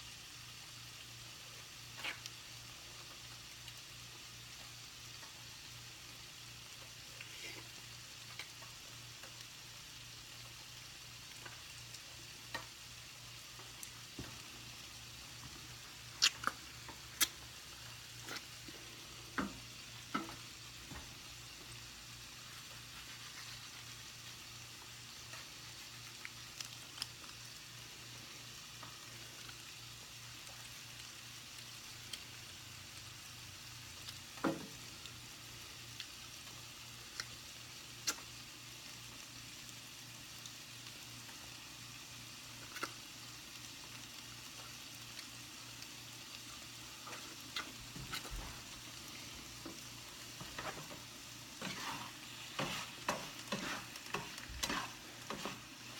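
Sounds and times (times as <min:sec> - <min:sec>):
food sizzling in a frying pan: 0:00.0 - 0:55.9.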